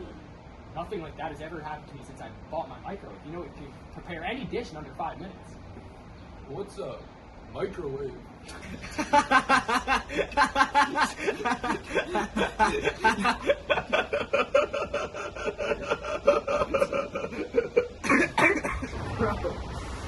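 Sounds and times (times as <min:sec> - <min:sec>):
young men laughing mockingly: 0:08.5 - 0:19.5.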